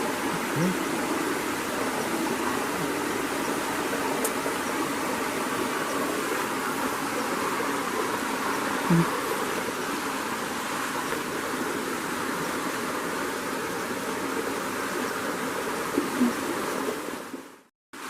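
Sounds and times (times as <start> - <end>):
riverside hiss: 0.0 - 17.2.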